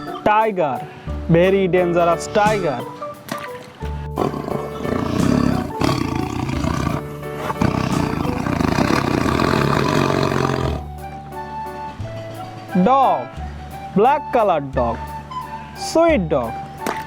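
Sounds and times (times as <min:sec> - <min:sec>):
background music: 0:00.0 - 0:17.0
tiger roaring and growling: 0:04.2 - 0:10.9.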